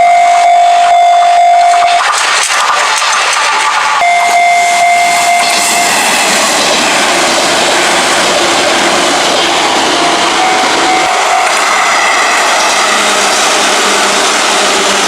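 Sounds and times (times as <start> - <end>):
crossing warning bell: 0.0 - 2.0, 4.0 - 7.2, 9.3 - 15.0
electric train running: 0.0 - 15.0.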